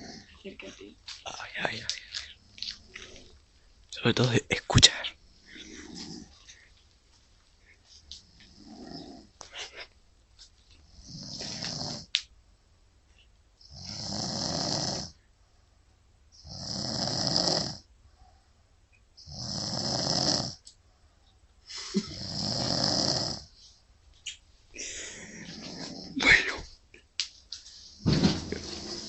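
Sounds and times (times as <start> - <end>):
person snoring: 0.0 - 0.4, 4.9 - 6.4, 8.5 - 9.7, 11.0 - 12.1, 13.7 - 15.2, 16.4 - 17.9, 19.2 - 20.6, 21.9 - 23.5, 24.8 - 26.6, 28.5 - 29.0.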